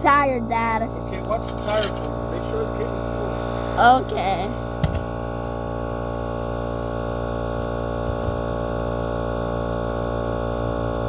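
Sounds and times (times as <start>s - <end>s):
air compressor droning: 0.0s - 11.0s.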